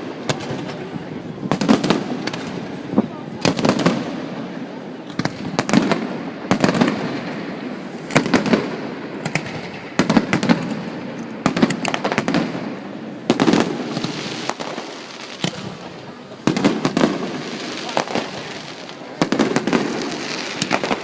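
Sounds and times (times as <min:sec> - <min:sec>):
fireworks bangs and crackles: 0:00.0 - 0:21.0.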